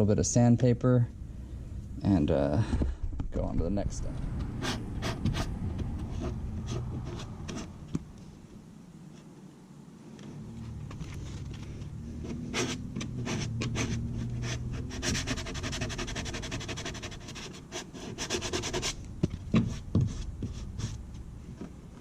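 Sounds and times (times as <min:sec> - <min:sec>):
sandpaper rubbing: 0:04.6 - 0:07.8, 0:12.2 - 0:21.1.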